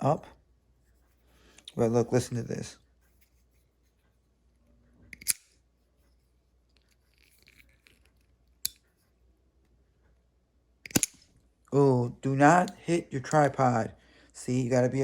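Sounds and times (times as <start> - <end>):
knife blade snapping open: 5.1 - 5.4, 10.9 - 11.2.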